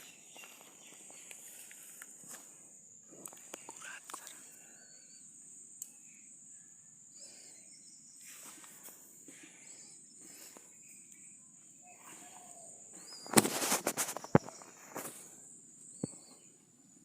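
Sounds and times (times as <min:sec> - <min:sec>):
crickets droning: 0:00.0 - 0:17.0
faint insect chirps: 0:00.0 - 0:17.0.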